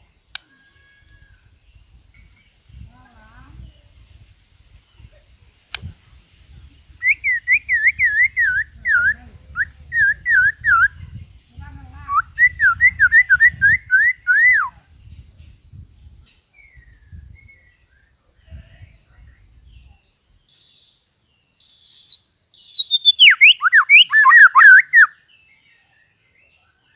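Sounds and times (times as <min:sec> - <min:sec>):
bird singing whistled notes: 0:07.0 - 0:11.4, 0:12.0 - 0:15.2, 0:16.5 - 0:18.2, 0:19.7 - 0:26.9.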